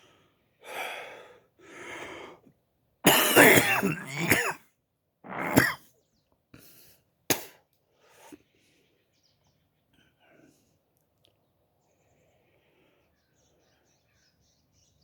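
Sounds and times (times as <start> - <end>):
man coughing: 3.1 - 4.6, 5.3 - 5.8.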